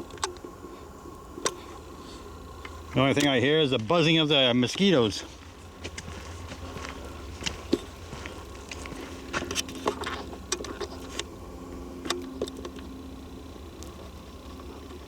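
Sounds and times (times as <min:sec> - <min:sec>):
faint insect buzz: 0:00.0 - 0:15.0
steady low rumble: 0:00.0 - 0:15.0
footsteps through undergrowth: 0:04.7 - 0:11.2.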